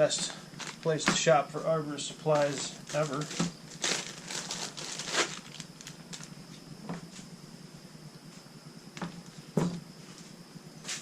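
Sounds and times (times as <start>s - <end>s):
rustling packaging: 0.6s - 0.9s, 2.3s - 6.3s.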